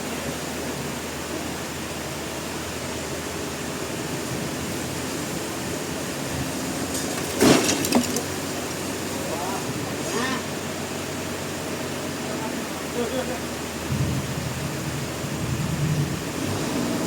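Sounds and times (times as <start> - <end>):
sawmill machinery droning: 0.0 - 17.0
loud knocks and clatter: 6.8 - 8.4.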